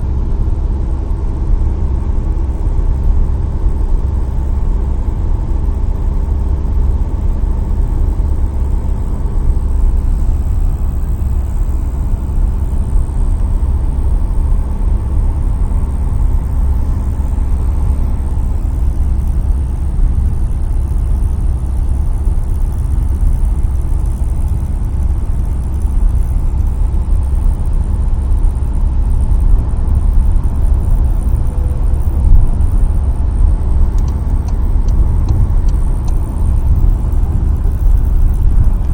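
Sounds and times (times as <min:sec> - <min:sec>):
car engine rumble: 0:00.0 - 0:38.9
rattle: 0:02.4 - 0:38.9.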